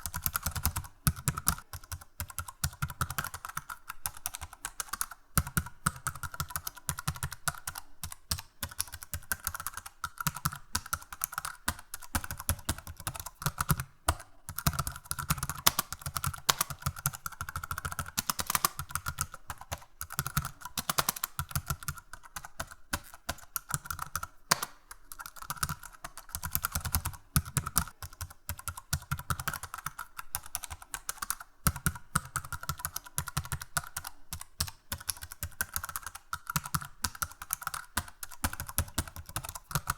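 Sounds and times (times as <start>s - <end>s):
computer keyboard typing: 0.0s - 39.9s.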